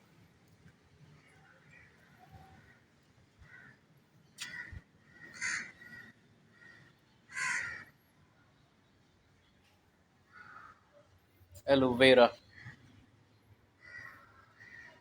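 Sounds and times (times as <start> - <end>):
faint bird calls: 13.8 - 15.0.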